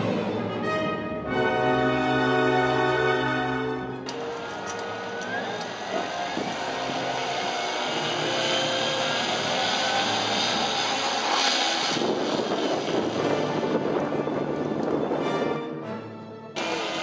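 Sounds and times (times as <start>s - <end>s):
model aircraft motor drone: 4.0s - 15.1s, 16.6s - 17.0s.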